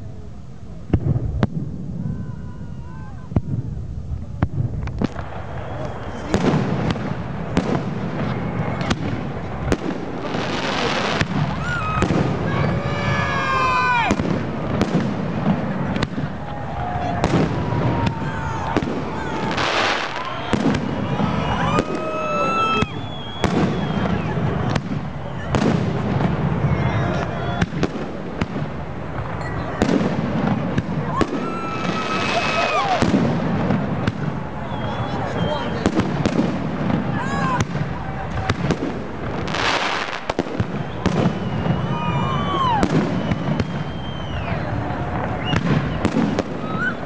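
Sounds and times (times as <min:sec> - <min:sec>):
fireworks bangs: 0:00.7 - 0:47.0
whistling fireworks shells: 0:15.9 - 0:27.9, 0:31.2 - 0:36.4, 0:39.6 - 0:47.0.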